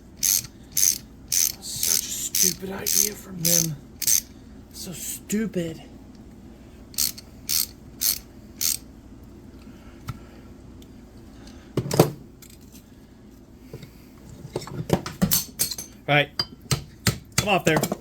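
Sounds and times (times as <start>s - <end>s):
ratchet wrench ratcheting: 0.2s - 4.3s, 6.9s - 8.8s.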